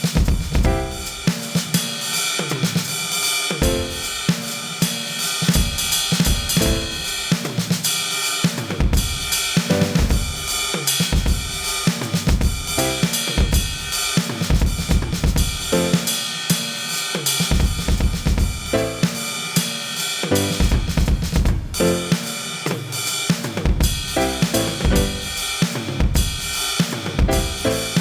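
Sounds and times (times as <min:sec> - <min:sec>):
snare and bass drum hits: 0:00.0 - 0:01.8, 0:03.5 - 0:04.4, 0:05.4 - 0:07.8, 0:08.4 - 0:16.2, 0:17.5 - 0:19.3, 0:20.2 - 0:28.0
cymbals and hi-hat: 0:00.0 - 0:28.0
tom strikes: 0:00.6 - 0:01.3, 0:03.6 - 0:04.2, 0:06.6 - 0:07.2, 0:24.2 - 0:25.4.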